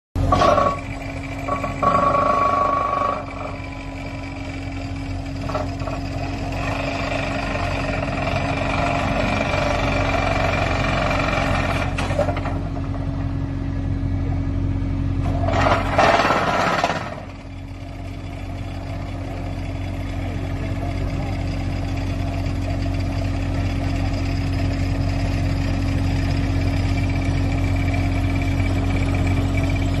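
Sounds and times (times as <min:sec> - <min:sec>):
hydraulic pile driver humming: 0:00.2 - 0:13.3, 0:15.0 - 0:30.0.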